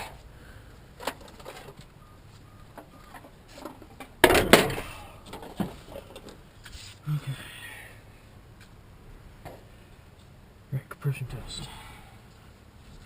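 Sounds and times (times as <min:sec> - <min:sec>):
clatter of hard objects: 0:01.0 - 0:01.9, 0:02.8 - 0:06.4.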